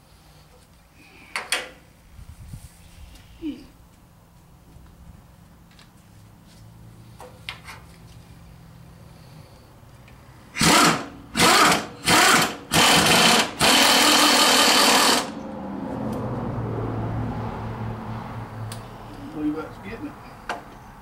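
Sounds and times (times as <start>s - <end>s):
power tool driving a bolt: 10.6s - 15.3s.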